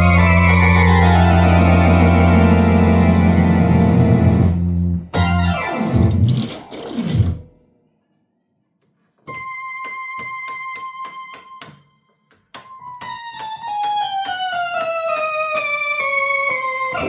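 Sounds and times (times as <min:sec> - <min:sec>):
electronic organ playing: 0:00.0 - 0:06.6, 0:12.8 - 0:17.0.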